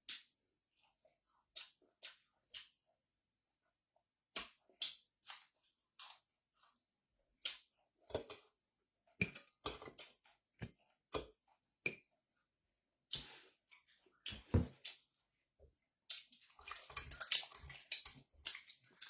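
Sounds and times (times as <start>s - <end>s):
mouth clicks and smacks chewing: 16.1s - 19.0s.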